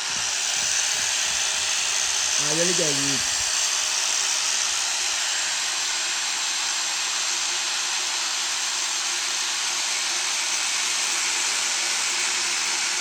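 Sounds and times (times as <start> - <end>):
workshop tool high hiss: 0.0 - 3.8.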